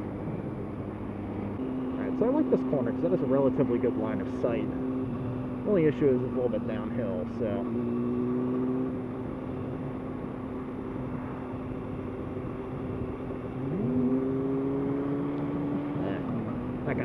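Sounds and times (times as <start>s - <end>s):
motorcycle engine revving: 0.0s - 17.0s
wind and road noise: 0.0s - 17.0s.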